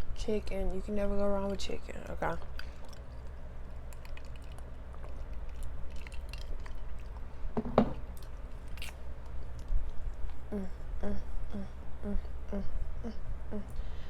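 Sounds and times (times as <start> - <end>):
wet crunchy mouth clicks: 2.4 - 7.3
person chewing fried chicken: 2.4 - 7.5, 8.1 - 10.5.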